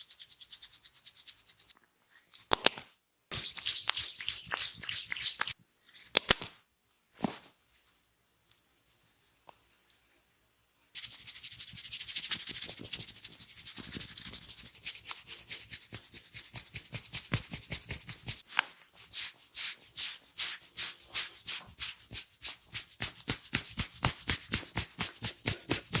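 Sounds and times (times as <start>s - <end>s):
hands rubbing hair and scalp: 3.3s - 6.1s, 11.0s - 26.0s.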